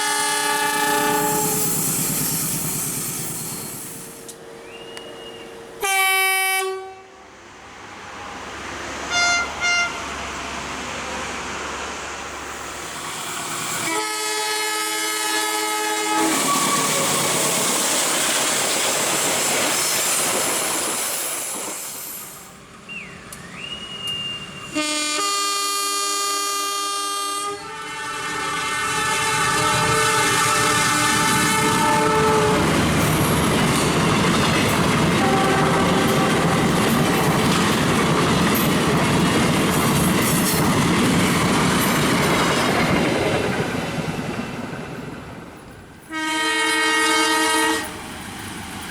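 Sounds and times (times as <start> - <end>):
diesel locomotive horn: 0.0 - 1.8, 4.6 - 7.4, 9.0 - 10.2, 13.8 - 17.4, 23.0 - 33.0, 35.1 - 36.8, 46.1 - 48.0
train wheels clattering on rails: 16.2 - 22.4, 29.3 - 46.0.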